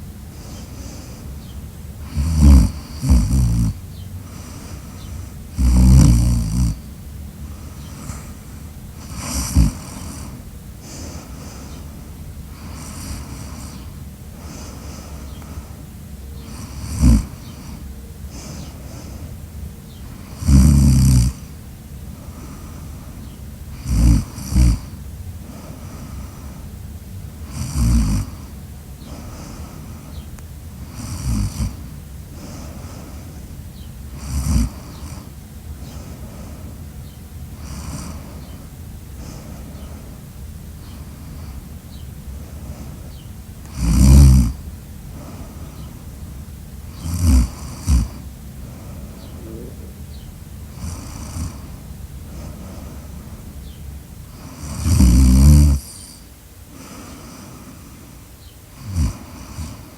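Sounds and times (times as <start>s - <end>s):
breathy background: 0.0s - 59.9s
person snoring loudly: 2.0s - 4.7s, 5.5s - 6.8s, 9.0s - 11.2s, 12.6s - 14.6s, 16.5s - 17.8s, 20.2s - 21.5s, 23.7s - 25.0s, 27.4s - 28.5s, 30.8s - 31.8s, 34.1s - 35.3s, 37.6s - 38.4s, 43.7s - 44.6s, 46.9s - 50.0s, 50.7s - 52.8s, 54.3s - 57.8s, 58.8s - 59.9s.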